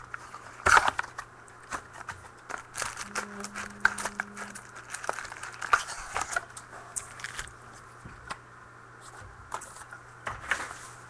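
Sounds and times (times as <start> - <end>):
wrapper crinkling and crackling: 0.1 - 7.6.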